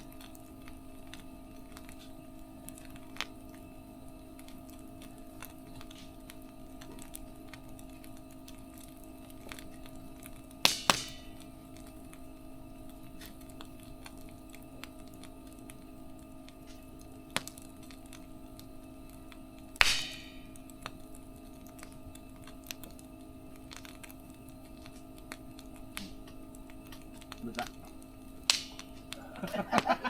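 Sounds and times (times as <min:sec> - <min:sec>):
steady low hum: 0:00.0 - 0:30.0
wood fire crackling and popping: 0:00.0 - 0:30.0.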